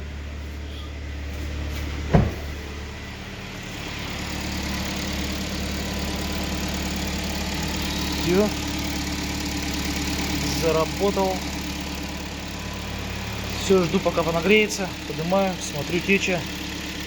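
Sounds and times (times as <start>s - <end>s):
car engine idling: 0.0s - 17.0s
thump: 2.1s - 2.6s.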